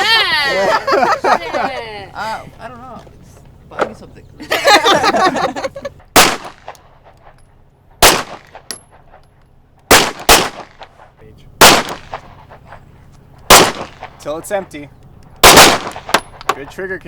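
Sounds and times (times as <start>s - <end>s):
pistol shots with echo: 6.2s - 6.8s, 8.0s - 9.0s, 9.9s - 10.9s, 11.6s - 12.3s, 13.5s - 14.2s, 15.4s - 16.4s.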